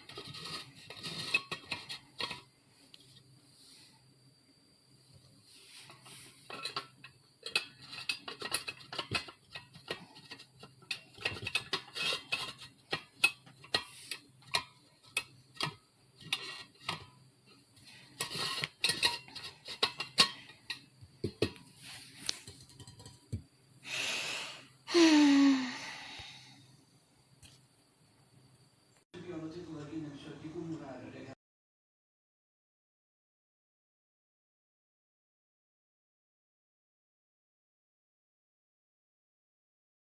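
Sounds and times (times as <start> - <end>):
metal kitchenware clinking: 18.1 - 21.5, 22.5 - 23.3.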